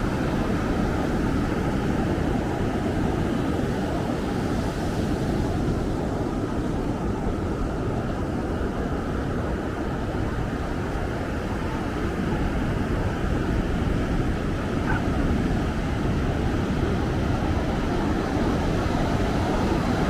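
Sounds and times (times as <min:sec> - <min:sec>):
wind rumbling on microphone: 0:00.0 - 0:20.0
ocean surf roaring: 0:10.5 - 0:20.0.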